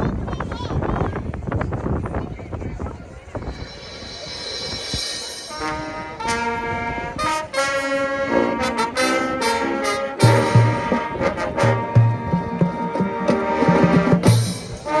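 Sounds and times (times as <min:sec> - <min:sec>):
brass band playing held chords: 0:05.0 - 0:15.0.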